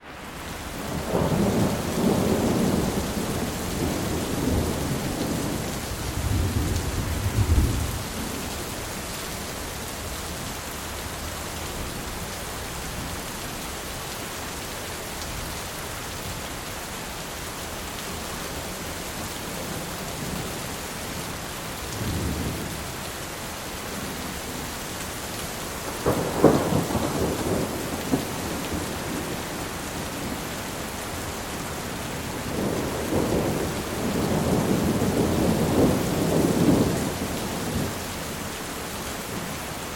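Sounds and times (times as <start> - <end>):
steady rain hissing: 0.0 - 39.9
thunder rumbling: 0.7 - 8.6, 25.8 - 30.9, 31.6 - 38.0.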